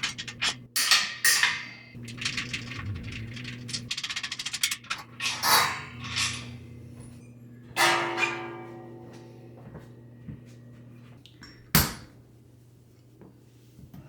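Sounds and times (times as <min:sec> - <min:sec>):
metal tools clicking: 0:00.0 - 0:06.4.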